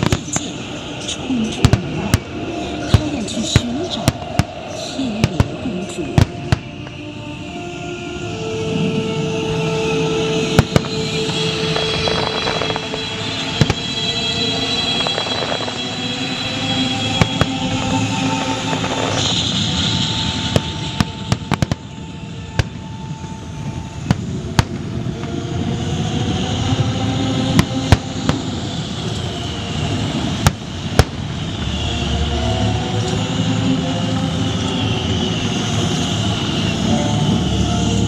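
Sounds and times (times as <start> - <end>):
fireworks bangs: 0.0 - 7.0, 10.4 - 26.5, 27.5 - 32.2.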